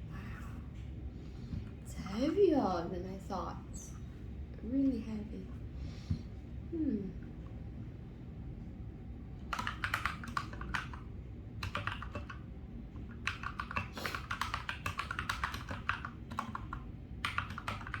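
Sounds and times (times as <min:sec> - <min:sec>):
typing on mechanical keyboard: 0:09.4 - 0:18.0.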